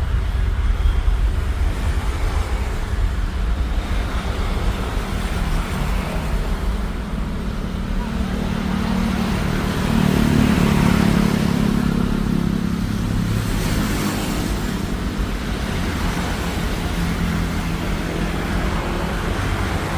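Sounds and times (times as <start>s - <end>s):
broad rushing noise: 0.0s - 19.9s
low engine drone: 0.0s - 19.9s.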